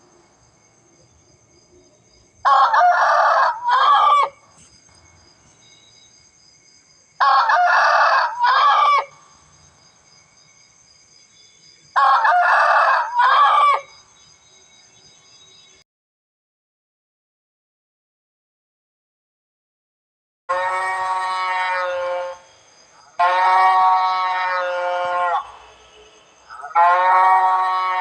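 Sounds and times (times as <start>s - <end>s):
rooster crowing: 2.4s - 4.4s, 7.2s - 9.2s, 12.0s - 14.0s, 20.5s - 22.4s, 23.2s - 25.6s, 26.5s - 28.0s.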